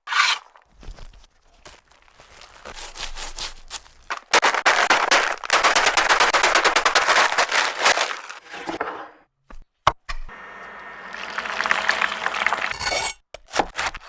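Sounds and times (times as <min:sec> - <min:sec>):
food crackling in hot oil: 0:11.0 - 0:12.8.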